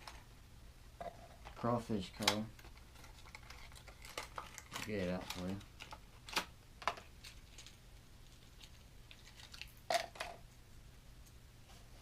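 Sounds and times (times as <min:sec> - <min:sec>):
plastic packaging crackling: 0:01.4 - 0:10.2.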